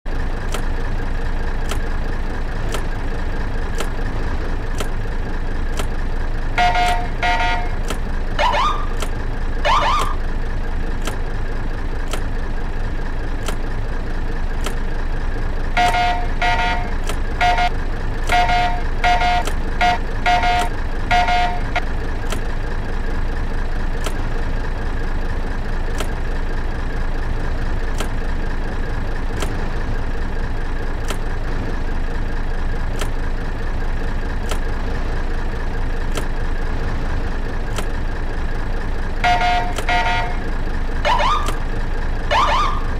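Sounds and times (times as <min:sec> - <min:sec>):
regular clicking: 0:01.5 - 0:02.0, 0:02.6 - 0:03.1, 0:03.7 - 0:05.0, 0:05.7 - 0:06.0, 0:11.0 - 0:11.2, 0:12.0 - 0:12.4, 0:13.4 - 0:13.7, 0:25.8 - 0:26.2
electronic horn honks: 0:06.6 - 0:07.8, 0:15.8 - 0:21.8, 0:39.2 - 0:40.5
short beeps: 0:06.6 - 0:07.8, 0:15.8 - 0:21.8, 0:39.2 - 0:40.4
siren whoop chirps: 0:08.4 - 0:08.9, 0:09.6 - 0:10.2, 0:41.0 - 0:41.5, 0:42.3 - 0:42.9.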